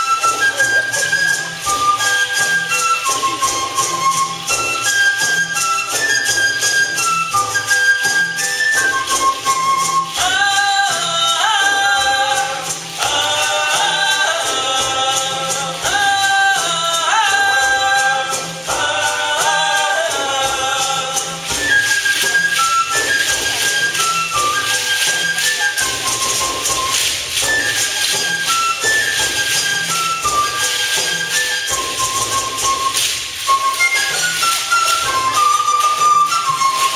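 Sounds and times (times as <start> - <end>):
high flute melody: 0.0 - 36.9
voices singing: 9.8 - 36.9
rattles shaking: 18.0 - 36.9.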